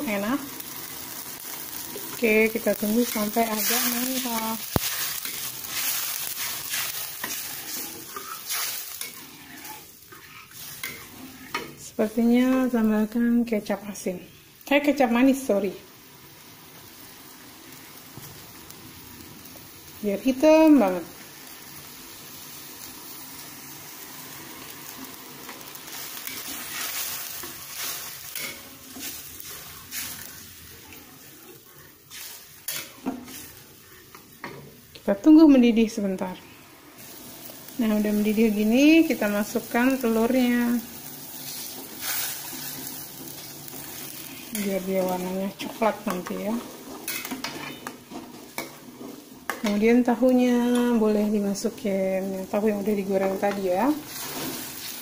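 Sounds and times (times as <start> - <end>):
spatula stirring strokes: 0.0 - 12.4, 23.0 - 34.9, 36.9 - 55.0
liquid sizzling in a pan: 0.0 - 55.0.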